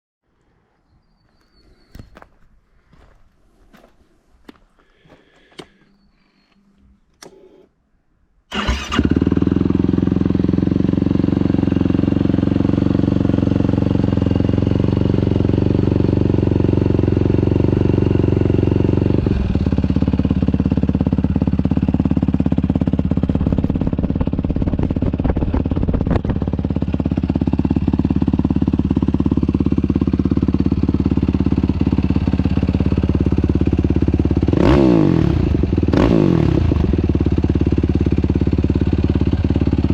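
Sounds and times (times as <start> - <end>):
atv engine starting and idling: 8.5 - 39.9.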